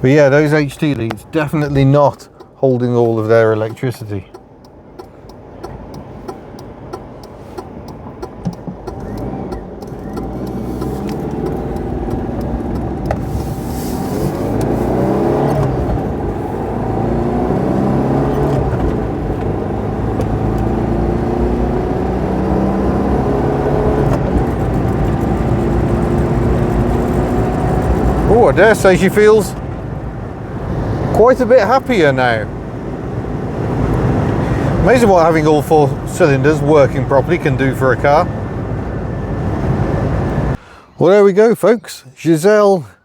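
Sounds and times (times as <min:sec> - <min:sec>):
car engine accelerating: 0:03.6 - 0:40.6.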